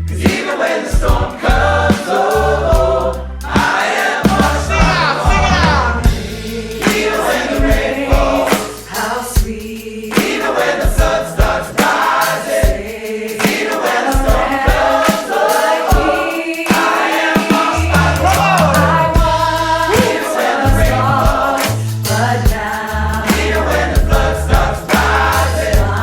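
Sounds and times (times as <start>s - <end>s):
choir singing gospel: 0.0s - 26.0s
beat with bass: 1.0s - 13.0s, 17.5s - 26.0s.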